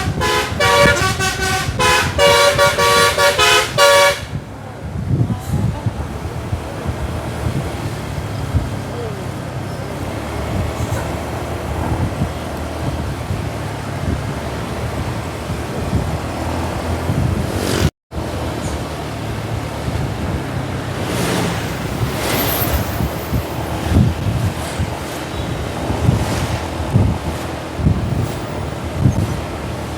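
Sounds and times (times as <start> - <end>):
road and wind noise: 0.0 - 29.9
vehicle engine humming: 0.0 - 29.9.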